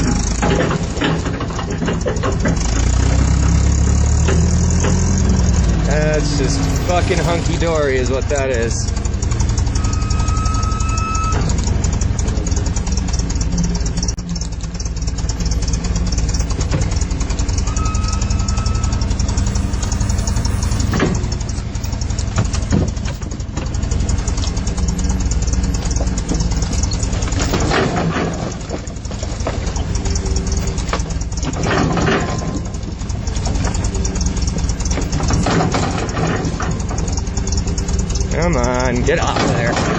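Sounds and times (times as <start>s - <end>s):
forklift engine rumbling: 0.0s - 39.9s
high squeals: 3.3s - 11.7s, 12.5s - 22.2s
rattling knock: 20.0s - 37.1s.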